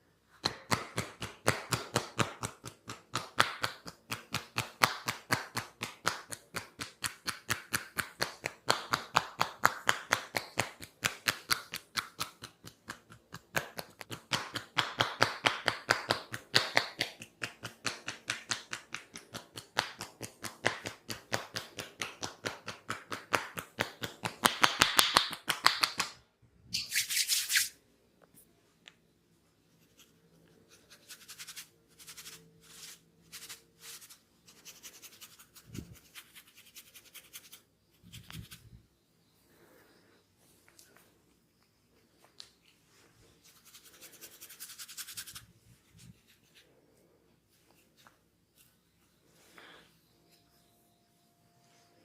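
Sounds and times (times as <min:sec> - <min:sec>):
rubbing sound: 0:26.8 - 0:27.8, 0:29.7 - 0:38.7, 0:43.4 - 0:46.6.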